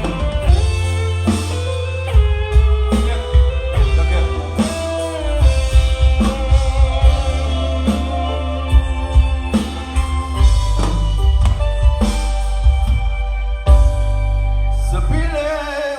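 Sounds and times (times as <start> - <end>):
loud bass-heavy music with drums: 0.0 - 15.9.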